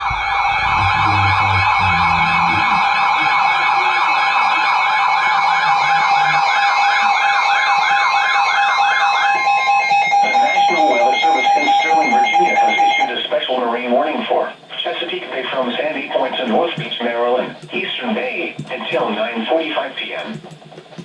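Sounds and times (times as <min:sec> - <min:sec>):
steady alert tone: 0:00.0 - 0:03.9
warbling siren tone: 0:00.0 - 0:13.1.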